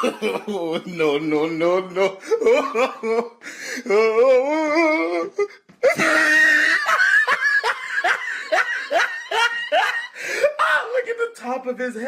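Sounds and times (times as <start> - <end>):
man laughing hysterically: 0.0 - 11.0.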